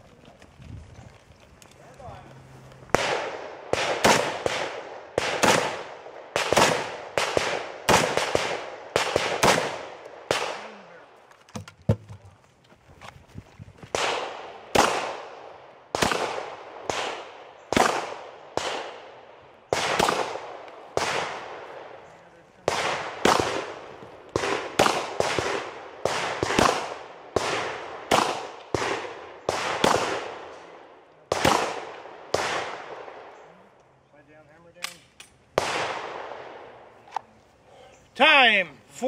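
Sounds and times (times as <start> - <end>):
gunshots with ringing tail: 2.9 - 10.9, 13.9 - 22.0, 22.6 - 30.6, 31.3 - 33.4.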